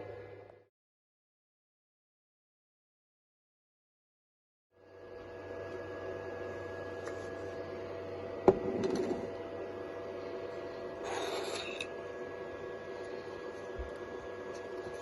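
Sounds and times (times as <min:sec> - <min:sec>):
printer fans humming: 0:04.9 - 0:15.0
short rasping scrape: 0:11.0 - 0:11.9.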